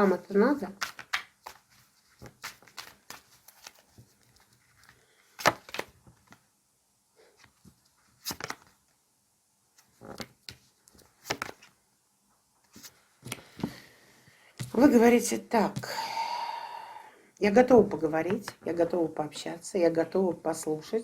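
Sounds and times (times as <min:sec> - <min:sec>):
cards shuffling: 0:00.5 - 0:06.4, 0:07.4 - 0:08.8, 0:09.8 - 0:11.8, 0:12.6 - 0:13.8.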